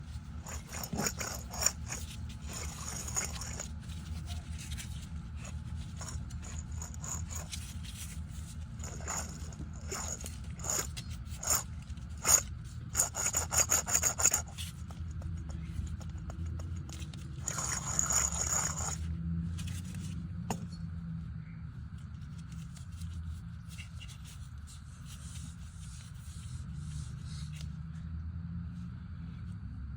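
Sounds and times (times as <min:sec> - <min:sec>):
wheel bearing rumbling and grinding: 0:00.0 - 0:20.8.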